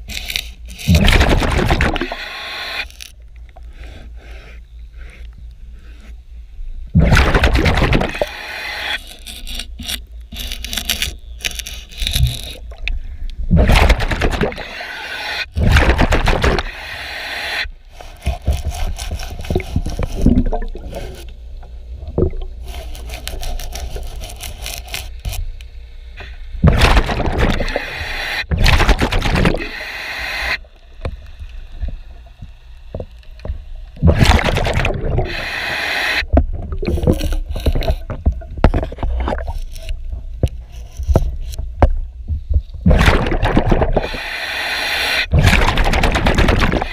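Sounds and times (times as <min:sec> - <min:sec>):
diver's bubbles rushing: 0:00.9 - 0:02.2, 0:07.0 - 0:08.2, 0:13.5 - 0:14.8, 0:15.6 - 0:16.8, 0:19.5 - 0:21.1, 0:22.0 - 0:22.6, 0:26.6 - 0:29.9, 0:34.0 - 0:35.6, 0:42.8 - 0:44.4, 0:45.3 - 0:46.9
underwater scraping on hull: 0:17.9 - 0:21.4, 0:22.2 - 0:25.4, 0:34.0 - 0:41.7.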